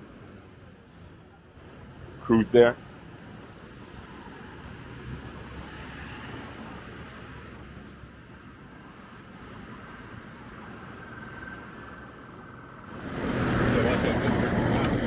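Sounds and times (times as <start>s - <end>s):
vehicle traffic rumble: 0.0s - 15.0s.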